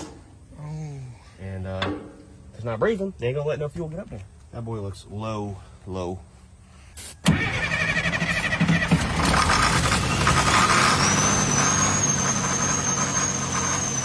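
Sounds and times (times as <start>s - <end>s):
diesel engine cranking and running: 7.2s - 14.0s.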